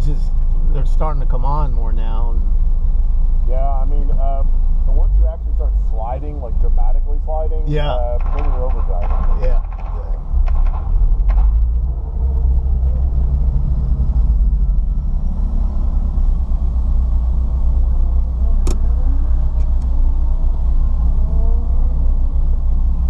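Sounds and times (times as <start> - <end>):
car engine and road drone: 0.0 - 23.0.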